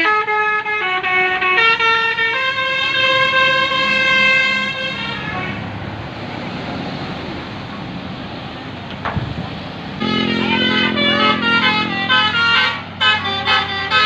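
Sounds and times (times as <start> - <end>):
heavy vehicle engine and road noise: 0.0 - 14.0
bus air horn chord: 10.0 - 14.0.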